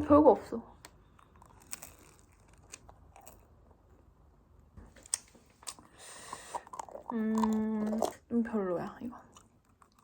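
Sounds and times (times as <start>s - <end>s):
bread crust crunching: 0.9s - 3.9s.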